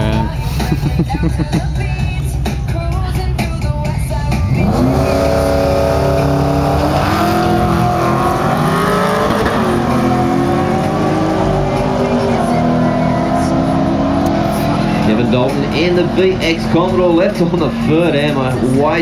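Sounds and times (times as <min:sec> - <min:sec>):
race car engines accelerating: 0:00.0 - 0:19.0.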